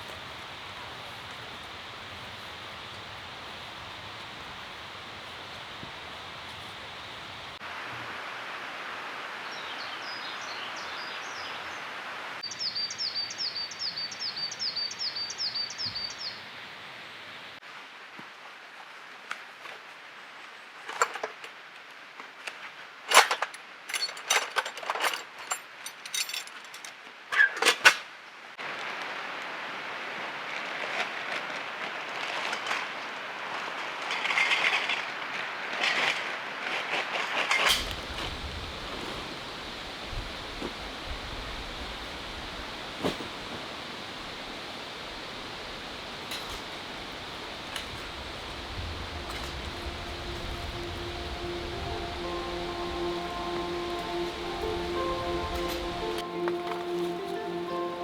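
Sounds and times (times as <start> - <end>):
songbird singing high notes: 48.7 - 58.0.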